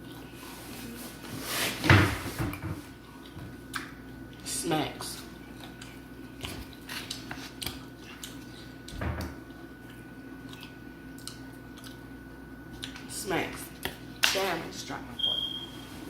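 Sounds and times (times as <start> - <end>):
person chewing with smacking: 2.9 - 14.3.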